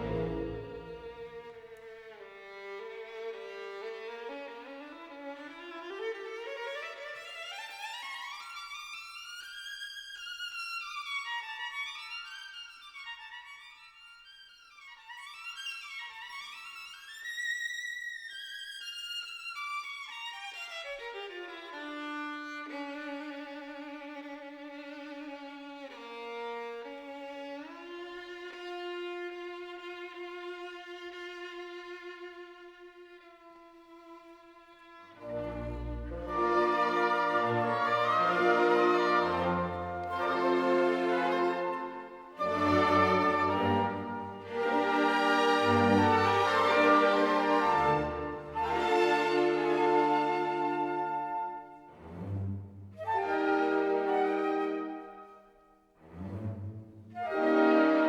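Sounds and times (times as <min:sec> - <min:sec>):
bowed violin melody: 0:00.0 - 0:55.4, 0:56.0 - 0:58.0.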